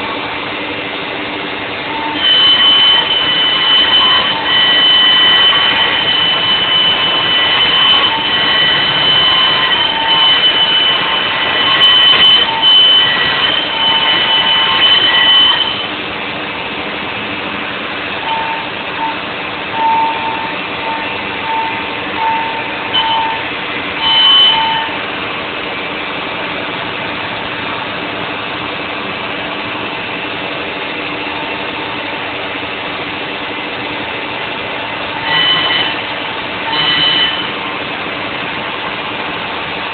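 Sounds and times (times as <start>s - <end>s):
router spindle whining: 1.5s - 16.2s, 18.0s - 25.2s, 34.0s - 39.4s
short high tones: 1.9s - 16.0s, 18.2s - 25.0s, 35.1s - 37.6s.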